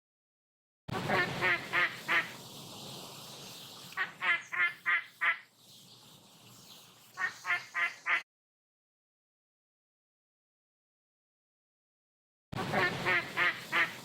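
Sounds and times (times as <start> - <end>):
duck quacking: 1.0 - 2.4, 4.0 - 5.5, 7.2 - 8.2, 12.6 - 14.0.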